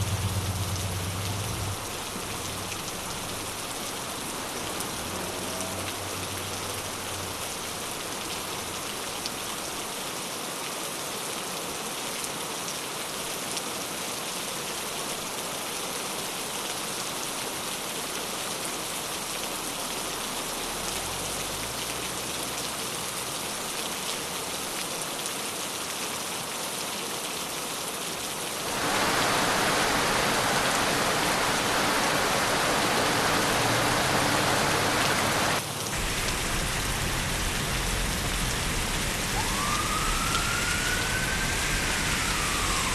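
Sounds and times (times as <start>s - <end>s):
rain on a wet street: 0.0s - 42.9s.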